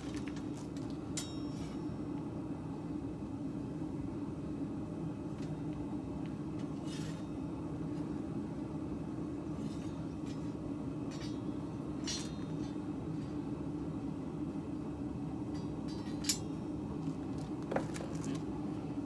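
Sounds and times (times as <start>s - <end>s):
workshop machinery hum: 0.0s - 19.0s
light metallic clinks: 15.5s - 16.7s.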